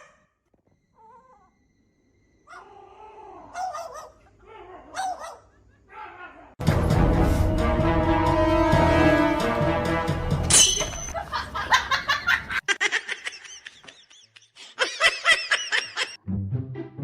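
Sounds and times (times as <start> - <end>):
background music: 6.6 - 11.1, 16.2 - 17.0
person laughing: 11.2 - 16.2.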